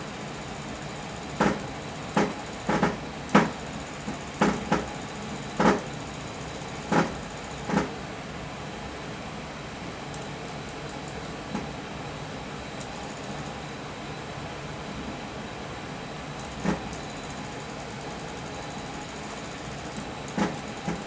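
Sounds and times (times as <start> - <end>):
steady hum: 14.8 - 21.0.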